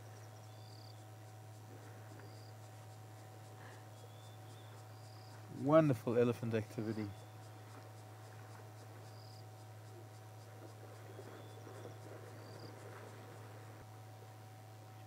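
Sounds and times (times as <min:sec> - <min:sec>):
insects chirping: 0:00.0 - 0:13.9
steady low hum: 0:00.0 - 0:15.0.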